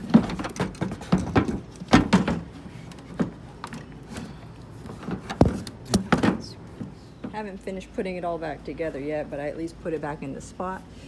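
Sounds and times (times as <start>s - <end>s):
plastic knocks and clicks: 5.2s - 6.4s.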